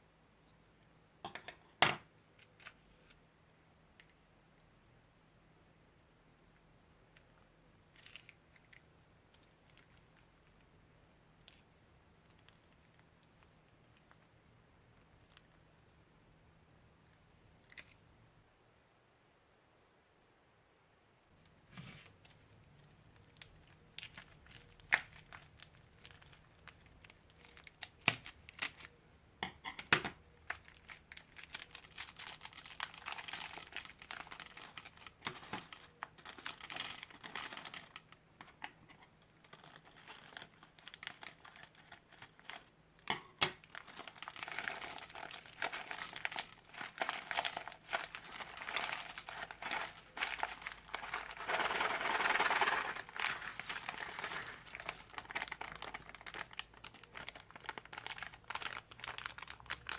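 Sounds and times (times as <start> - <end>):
crunchy slime crackling: 22.7 - 28.9, 30.4 - 38.2, 39.4 - 42.7, 43.5 - 59.9.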